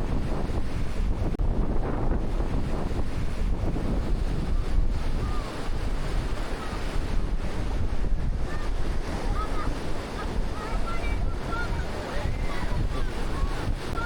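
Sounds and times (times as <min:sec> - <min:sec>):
surf washing on beach: 0:00.0 - 0:14.0
wind buffeting microphone: 0:00.0 - 0:14.0.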